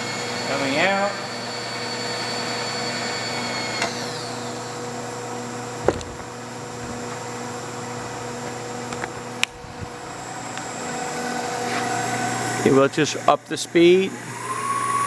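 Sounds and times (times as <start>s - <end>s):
descending high whine: 0.0s - 15.0s
milling machine humming and whining: 0.0s - 15.0s
sharp clunk: 5.8s - 7.0s.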